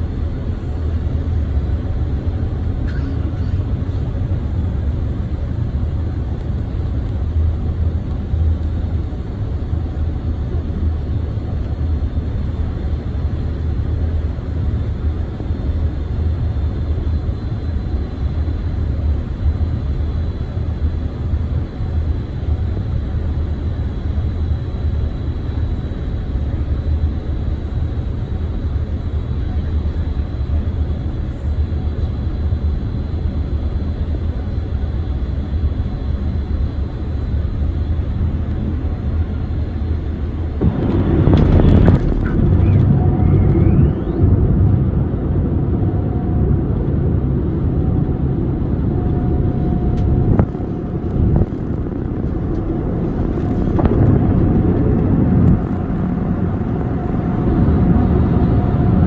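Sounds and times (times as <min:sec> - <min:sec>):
airplane cabin noise: 0:00.0 - 0:59.0
rush of air: 0:40.4 - 0:44.9, 0:48.2 - 0:57.8.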